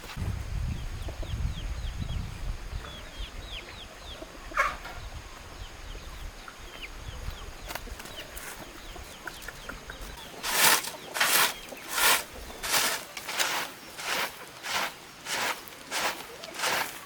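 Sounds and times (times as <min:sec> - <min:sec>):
chickens peeping: 0:00.6 - 0:17.0.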